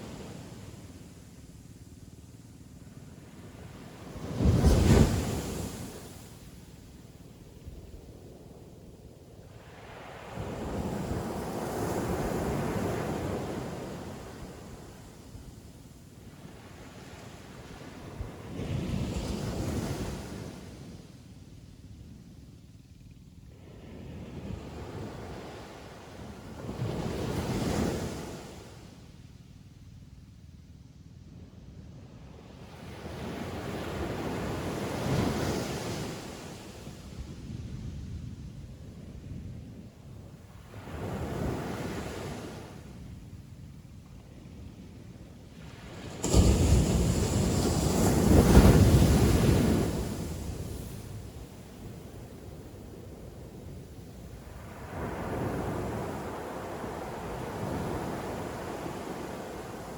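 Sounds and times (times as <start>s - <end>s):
ocean wave breaking: 46.2s - 51.0s.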